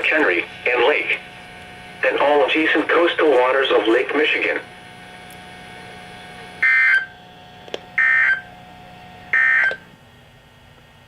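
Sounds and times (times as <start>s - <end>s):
harsh warbling data chirps: 8.0s - 8.4s.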